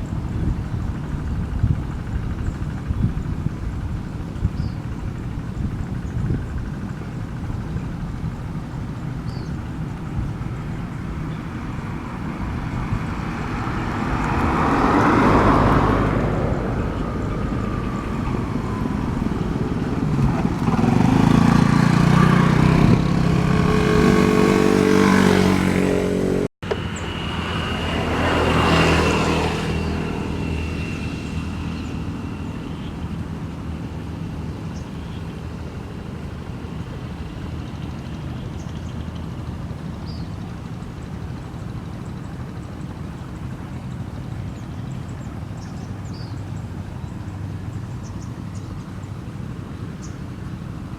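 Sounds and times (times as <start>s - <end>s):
road noise: 0.0s - 50.9s
vehicle engine passing: 10.9s - 33.9s.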